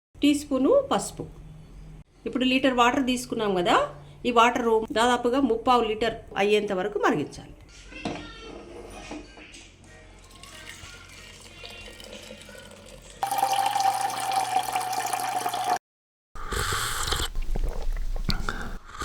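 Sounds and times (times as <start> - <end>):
faint background music: 0.2 - 14.3
liquid being poured: 10.2 - 15.8.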